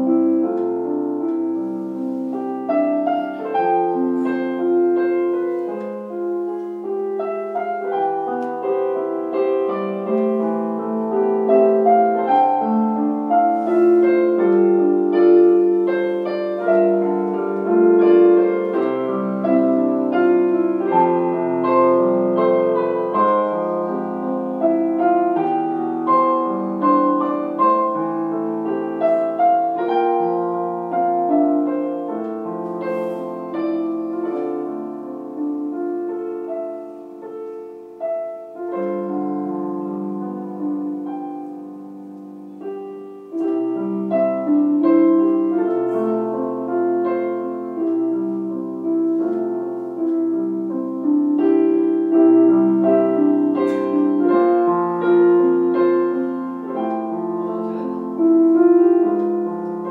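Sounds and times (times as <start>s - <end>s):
solo piano piece: 0.0s - 59.9s.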